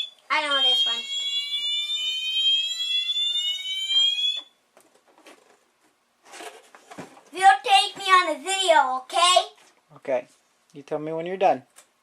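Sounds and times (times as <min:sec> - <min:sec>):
fire alarm siren tone: 0:00.0 - 0:04.6.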